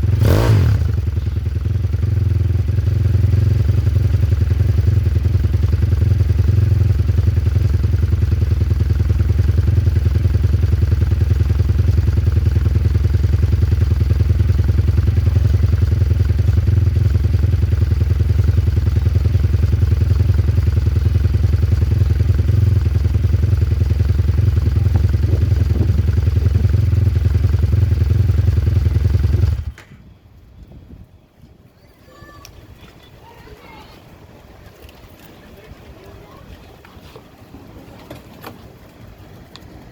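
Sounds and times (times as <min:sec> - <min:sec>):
single-cylinder engine running: 0:00.0 - 0:29.8, 0:33.6 - 0:39.9.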